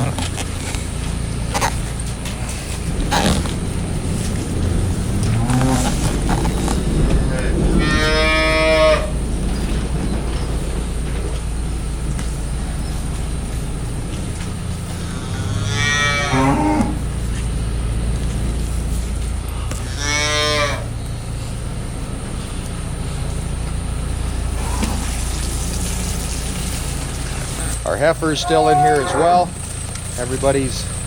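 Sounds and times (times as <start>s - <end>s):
steady low hum: 0.0s - 31.0s
cattle mooing: 2.8s - 10.0s, 14.8s - 17.3s, 19.4s - 21.0s, 27.6s - 29.6s.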